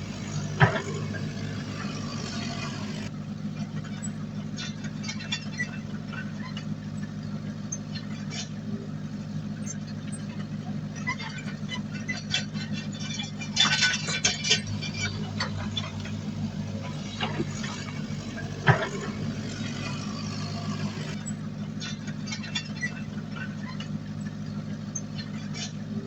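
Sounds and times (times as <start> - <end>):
sharp knocks and rattles: 0.0 - 3.1, 10.4 - 23.9
diesel engine running: 0.0 - 26.0.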